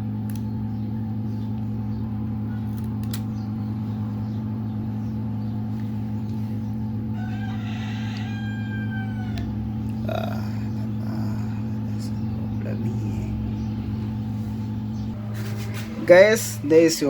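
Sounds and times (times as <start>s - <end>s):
low electrical hum: 0.0s - 17.0s
light clicks: 0.3s - 0.5s
rooster crowing: 6.8s - 11.7s.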